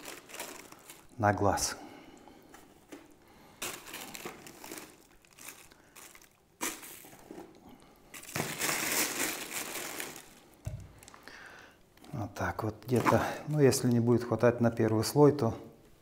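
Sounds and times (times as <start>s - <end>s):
bag crinkling and rustling: 0.0s - 1.6s, 3.0s - 11.3s, 12.8s - 14.1s.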